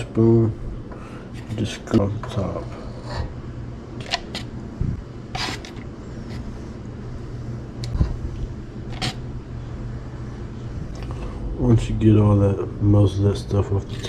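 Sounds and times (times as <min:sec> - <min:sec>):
metal spoon scraping a pot: 0:05.3 - 0:06.5, 0:08.9 - 0:09.2.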